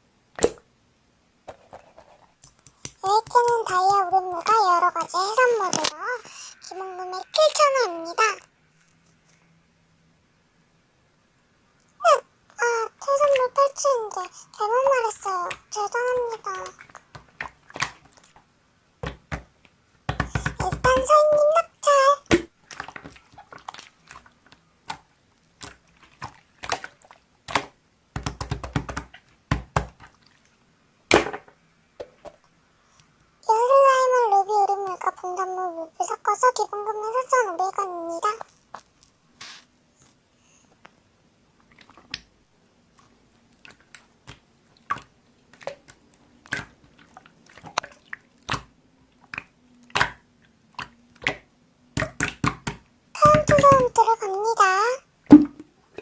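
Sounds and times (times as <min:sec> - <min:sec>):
slime squished by hand: 0:43.0 - 0:53.9.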